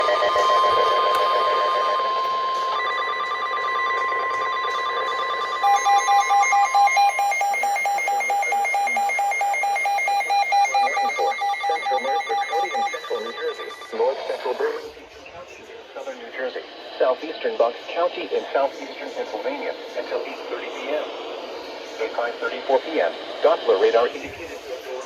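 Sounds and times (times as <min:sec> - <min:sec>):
steady alarm tone: 0:00.0 - 0:15.0
rapidly pulsing beep: 0:00.0 - 0:24.1.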